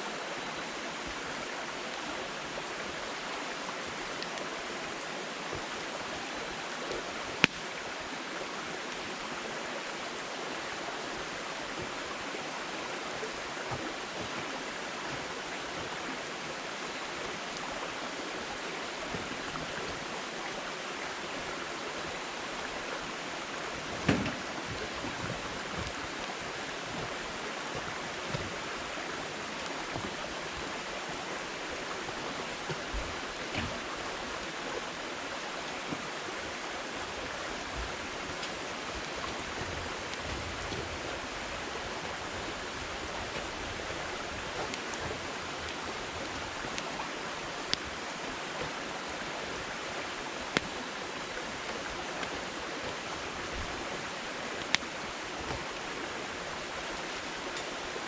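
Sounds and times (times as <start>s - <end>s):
wood fire hissing and crackling: 0.2s - 58.0s
sharp pop of firewood: 7.4s - 7.6s, 24.0s - 24.4s.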